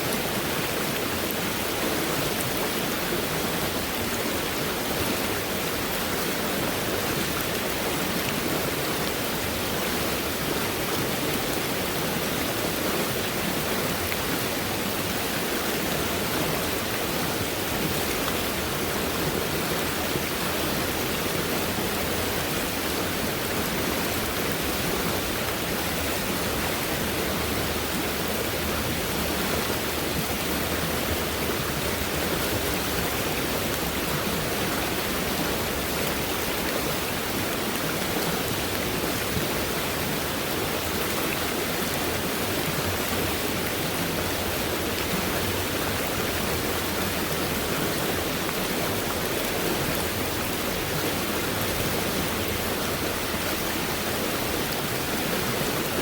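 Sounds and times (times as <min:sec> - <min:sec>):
stream water rushing: 0:00.0 - 0:56.0.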